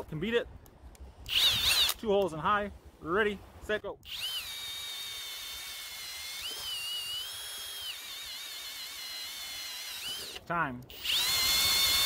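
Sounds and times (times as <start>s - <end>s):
drill motor whine: 1.3s - 1.9s, 4.1s - 12.0s.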